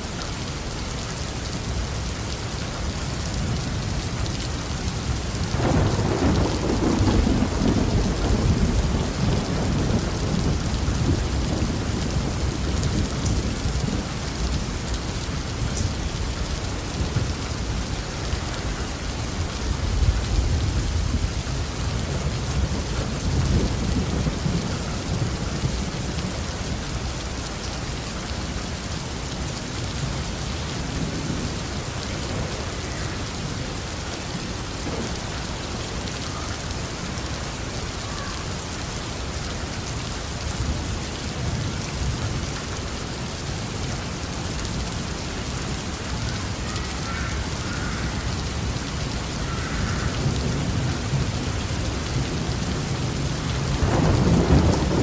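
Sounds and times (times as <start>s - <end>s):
heavy rain falling: 0.0s - 55.0s
thunder rumbling: 5.1s - 14.8s, 34.7s - 35.6s, 50.1s - 55.0s.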